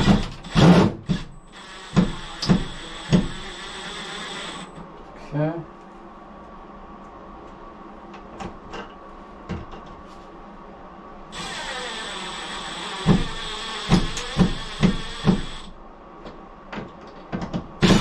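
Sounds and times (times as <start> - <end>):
cordless drill whirring: 1.5 - 4.7, 11.3 - 15.8
knocks of screw seating: 13.0 - 15.5.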